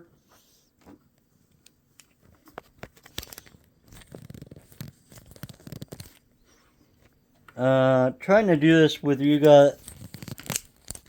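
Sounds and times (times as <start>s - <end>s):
handling clicks and rustling: 0.9s - 6.3s, 8.3s - 11.0s.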